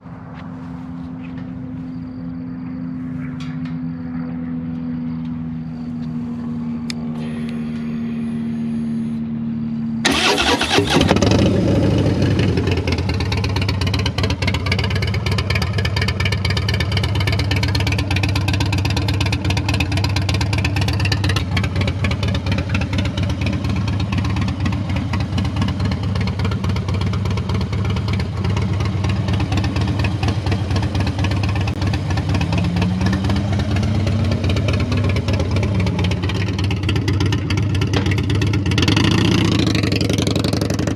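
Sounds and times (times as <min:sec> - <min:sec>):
steady low hum: 0:00.0 - 0:10.1
motorcycle engine starting and idling: 0:06.8 - 0:40.9.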